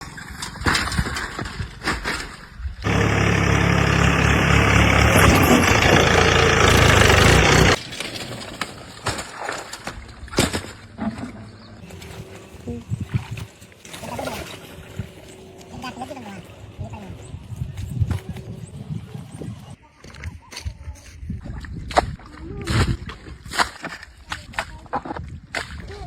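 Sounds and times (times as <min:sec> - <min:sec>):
engine running loudly: 0:02.8 - 0:07.8.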